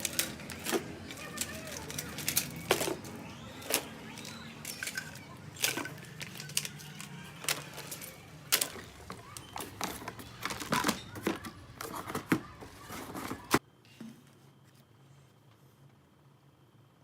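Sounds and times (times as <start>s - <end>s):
small hard objects clattering: 0.0s - 13.6s.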